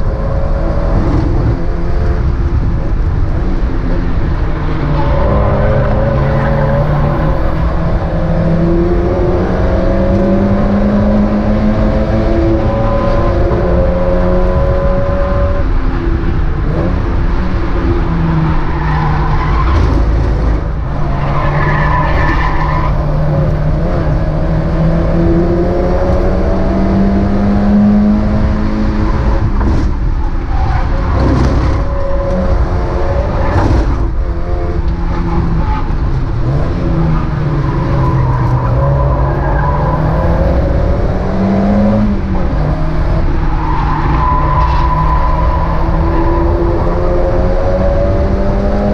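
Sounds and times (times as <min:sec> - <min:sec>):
racing car engine revving: 0:00.0 - 0:48.9.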